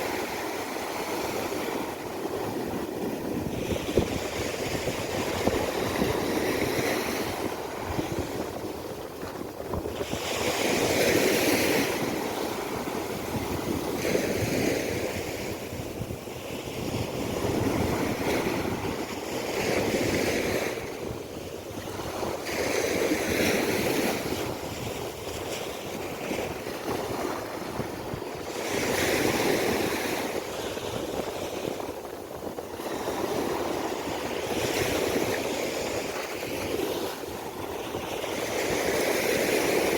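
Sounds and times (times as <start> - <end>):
sea waves breaking on beach: 0.0 - 39.9
wind on microphone: 0.0 - 39.9.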